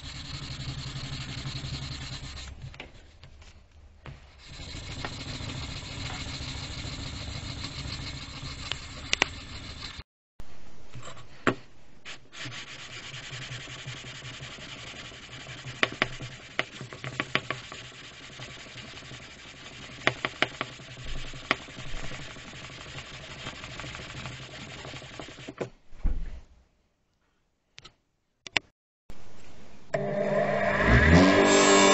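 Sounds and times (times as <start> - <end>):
sanding on metal: 0.0 - 2.6, 4.4 - 10.0, 12.3 - 25.5.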